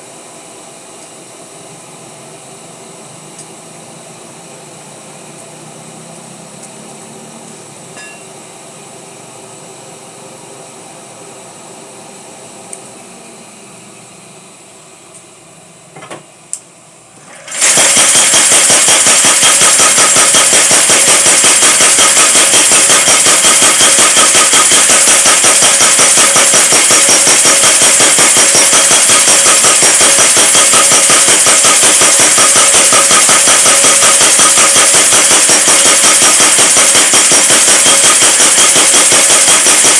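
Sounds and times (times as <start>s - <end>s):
power hammer pounding: 17.4s - 39.9s.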